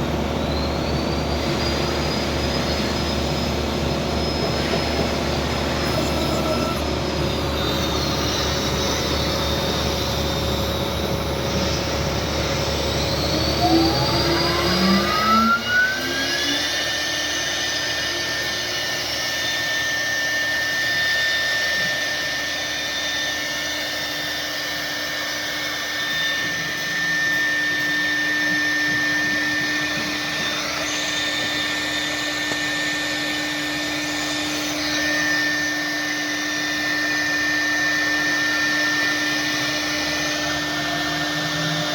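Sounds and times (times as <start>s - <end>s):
rushing machine noise: 0.0s - 21.8s, 22.6s - 41.9s
spindle motor whine: 0.0s - 41.9s.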